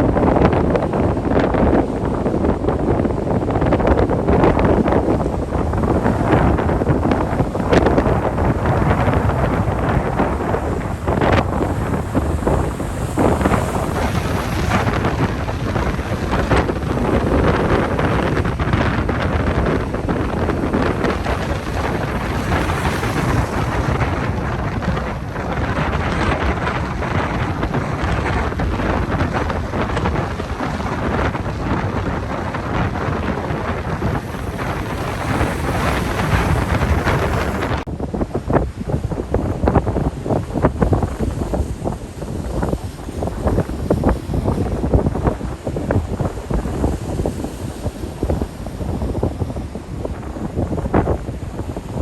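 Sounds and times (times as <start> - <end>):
wind buffeting microphone: 0.0 - 52.0
waves rushing: 2.0 - 52.0.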